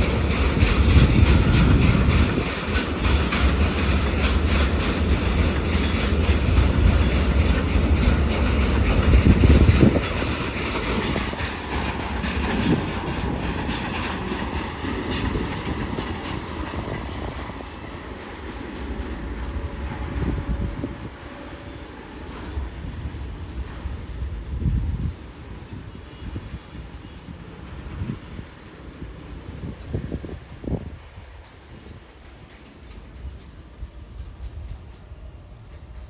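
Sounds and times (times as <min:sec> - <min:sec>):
wheels clattering over rail joints: 0:00.0 - 0:18.5
heavy train rumble: 0:00.0 - 0:36.0
wheel squeal: 0:00.7 - 0:01.7, 0:07.2 - 0:08.1.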